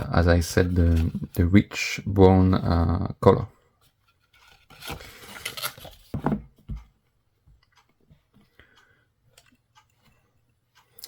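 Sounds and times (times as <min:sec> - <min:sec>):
paper rustling: 0:00.6 - 0:01.4, 0:03.8 - 0:06.2.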